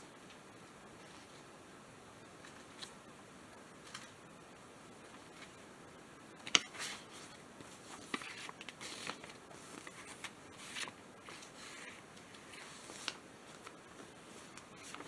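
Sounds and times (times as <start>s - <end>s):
paper rustling: 6.5s - 15.0s.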